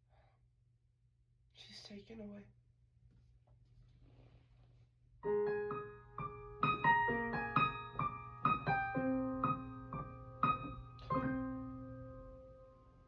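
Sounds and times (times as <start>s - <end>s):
solo piano: 5.2s - 13.0s.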